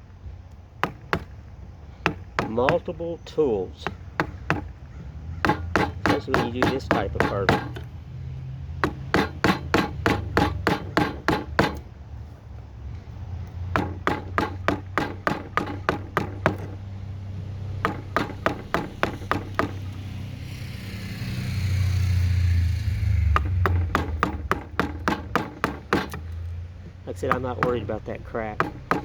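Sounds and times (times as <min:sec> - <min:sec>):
mallet knocking on chisel: 0:00.8 - 0:01.4, 0:02.0 - 0:03.0, 0:03.8 - 0:04.8, 0:05.4 - 0:07.9, 0:08.8 - 0:11.9, 0:13.7 - 0:16.8, 0:17.4 - 0:20.0, 0:23.3 - 0:26.4, 0:27.1 - 0:29.0.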